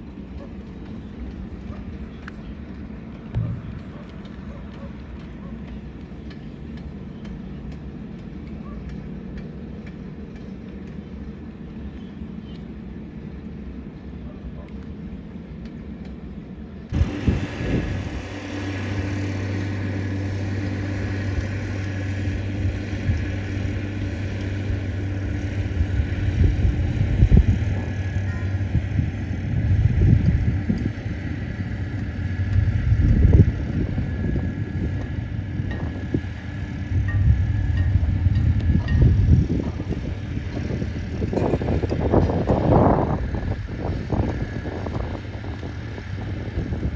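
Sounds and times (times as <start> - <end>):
irregular low rumbles: 0.0 - 6.2, 16.9 - 45.7
vehicle engine running: 0.0 - 46.9.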